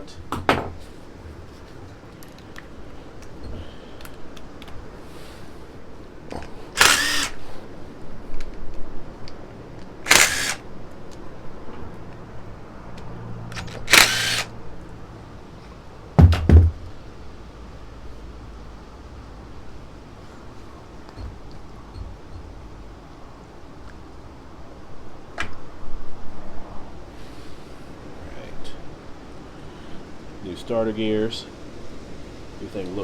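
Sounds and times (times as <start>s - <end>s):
light tool clicks: 6.8s - 7.4s, 9.8s - 10.6s
ratchet wrench clicking: 6.8s - 7.4s, 10.1s - 10.6s, 13.6s - 14.5s
sharp knocks: 16.2s - 16.9s.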